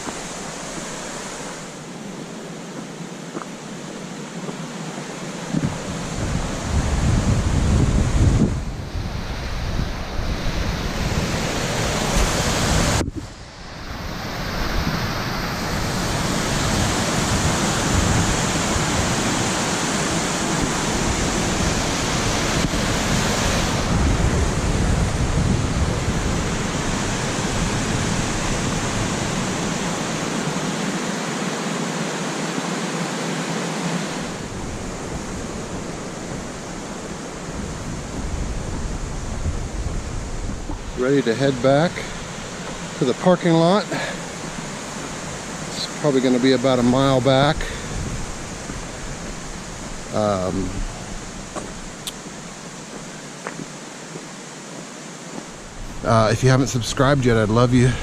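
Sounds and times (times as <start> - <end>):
waterfall rushing: 0.0 - 58.0
wind buffeting microphone: 5.4 - 31.0, 34.2 - 43.0, 46.6 - 53.7.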